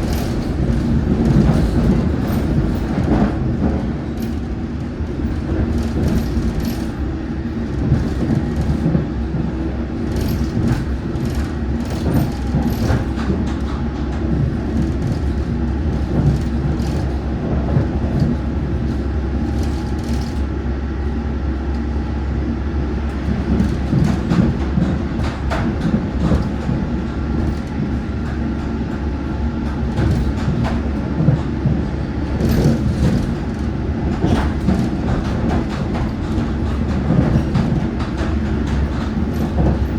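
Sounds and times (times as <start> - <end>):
train rumbling along track: 0.0 - 39.9
wheel and rail clicks: 23.1 - 39.9.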